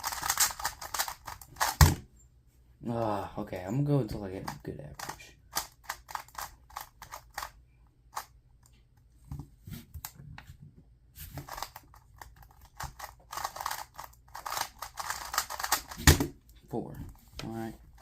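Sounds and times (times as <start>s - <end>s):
puzzle cube clicking and scraping: 0.0s - 1.8s, 4.4s - 8.3s, 11.3s - 16.0s.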